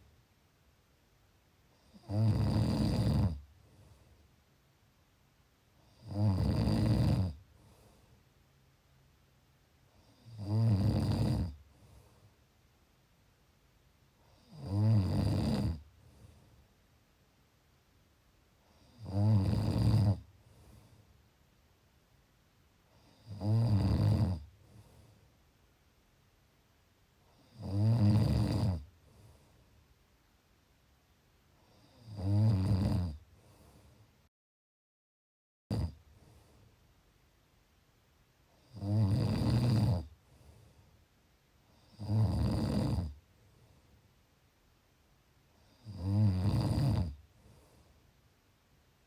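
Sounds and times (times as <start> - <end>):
person snoring: 1.8 - 3.4, 5.8 - 7.4, 10.0 - 11.6, 14.2 - 15.8, 18.7 - 20.3, 23.0 - 24.5, 27.3 - 28.9, 31.7 - 33.2, 35.7 - 36.0, 38.6 - 40.1, 41.7 - 43.2, 45.6 - 47.2
quiet breathing: 2.9 - 6.2, 7.2 - 10.4, 11.2 - 13.0, 15.7 - 17.4, 18.4 - 21.7, 22.7 - 23.5, 24.4 - 25.8, 28.8 - 30.3, 31.5 - 32.2, 33.1 - 34.3, 35.9 - 37.0, 38.3 - 46.0, 46.9 - 49.0
faint out-breath: 3.6 - 4.3, 7.5 - 8.4, 11.6 - 12.5, 15.9 - 16.7, 20.4 - 21.2, 24.5 - 25.4, 29.0 - 29.8, 33.3 - 34.3, 36.1 - 36.9, 40.1 - 41.0, 47.3 - 48.2.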